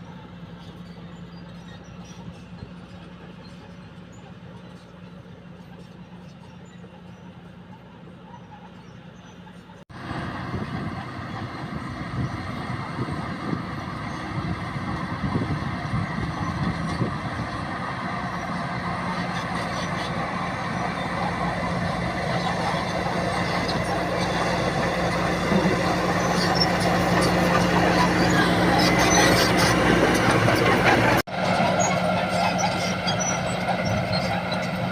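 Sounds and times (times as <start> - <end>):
bulldozer diesel engine running: 0.0 - 34.9.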